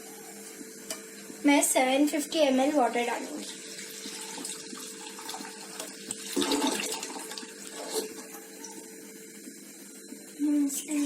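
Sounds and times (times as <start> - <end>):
water pouring and splashing: 3.4 - 8.4.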